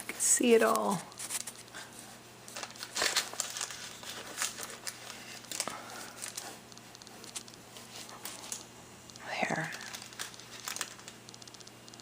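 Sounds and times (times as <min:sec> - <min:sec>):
wrapping paper crinkling: 0:00.0 - 0:12.0
small clicks and taps: 0:05.5 - 0:12.0.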